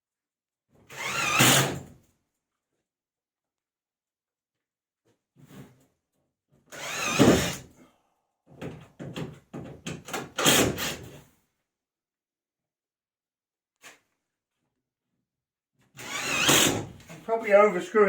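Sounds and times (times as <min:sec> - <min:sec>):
cordless drill driving screws: 0:00.9 - 0:01.8, 0:06.7 - 0:07.6, 0:16.0 - 0:16.9.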